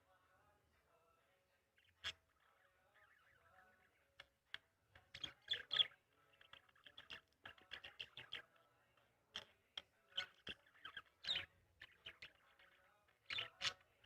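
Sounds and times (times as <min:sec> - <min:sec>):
small birds chirping: 0:01.7 - 0:14.0.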